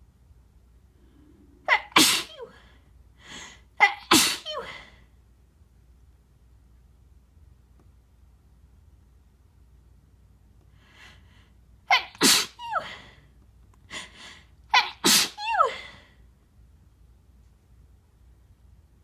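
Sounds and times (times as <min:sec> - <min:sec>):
person sneezing: 0:01.7 - 0:02.6, 0:03.8 - 0:04.9, 0:11.9 - 0:13.2, 0:14.8 - 0:16.1.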